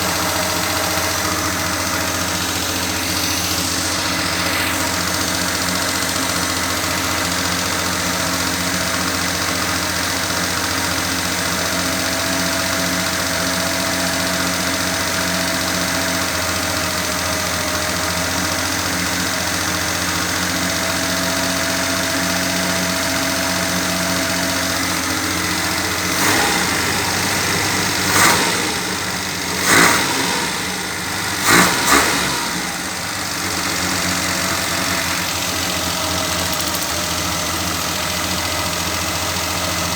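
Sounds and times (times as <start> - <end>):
car engine idling: 0.0 - 39.9
engine throttle blips: 0.0 - 39.9.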